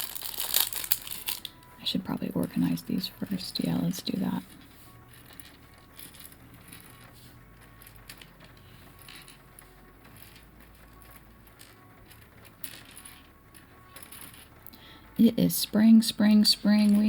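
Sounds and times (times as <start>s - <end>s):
plastic pieces clicking and clattering: 0.0s - 1.7s, 4.5s - 14.9s.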